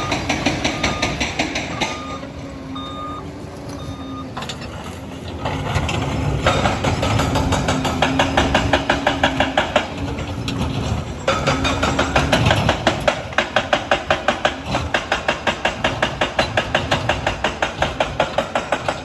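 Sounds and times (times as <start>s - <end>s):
reversing alarm beeping: 0.0s - 4.7s
diesel engine running: 0.0s - 19.0s
steel tracks clattering: 0.0s - 19.0s.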